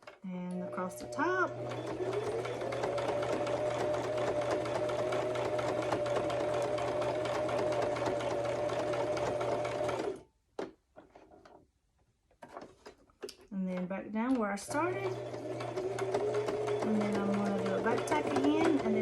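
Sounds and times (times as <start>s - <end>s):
electric sewing machine stitching: 0.0s - 10.2s, 14.4s - 19.0s.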